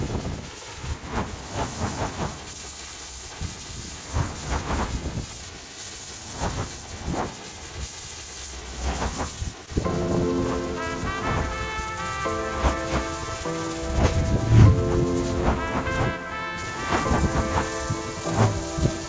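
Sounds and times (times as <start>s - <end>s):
pressure washer spraying water: 5.4s - 19.0s
music: 9.8s - 19.0s.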